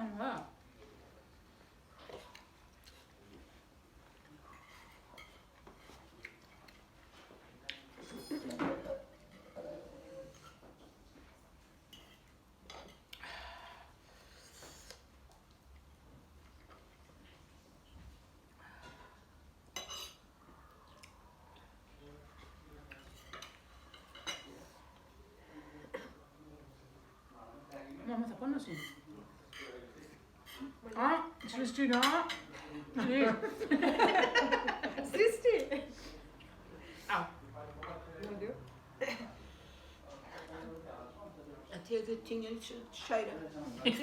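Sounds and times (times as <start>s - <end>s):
cutlery clinking on plates: 4.5s - 6.6s, 7.9s - 10.9s, 11.8s - 13.1s, 19.7s - 20.3s, 22.4s - 24.8s, 28.6s - 32.7s
cutlery clicking on plates: 19.8s - 20.2s.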